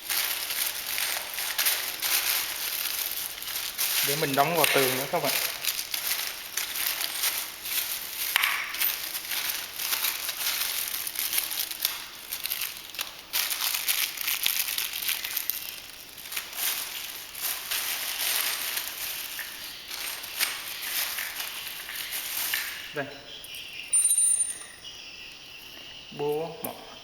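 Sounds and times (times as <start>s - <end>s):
rummaging rustling and crackling: 0.0s - 24.7s.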